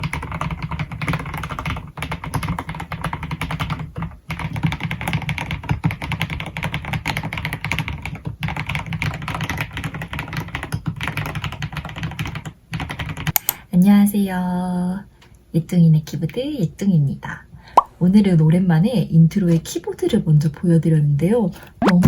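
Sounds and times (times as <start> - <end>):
fast typing on mechanical keyboard: 0.0 - 13.5.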